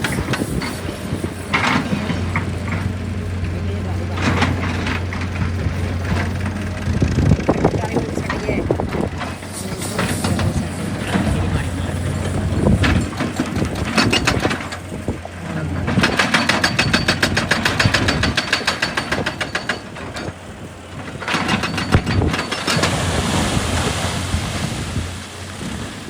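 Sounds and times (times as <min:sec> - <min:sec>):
excavator engine running: 0:00.0 - 0:26.0
fast even clatter of clicks: 0:12.8 - 0:14.8, 0:15.9 - 0:20.4, 0:21.1 - 0:23.0.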